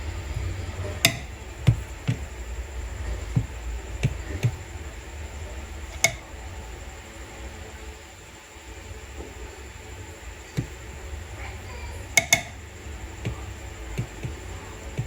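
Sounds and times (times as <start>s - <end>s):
low steady hum: 0.0s - 15.0s
utensil tapping a dish: 12.2s - 12.6s.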